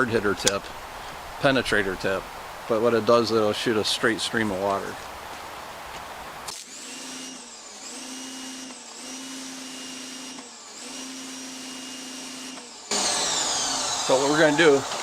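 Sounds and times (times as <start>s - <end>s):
pressure washer humming and whining: 6.5s - 15.0s.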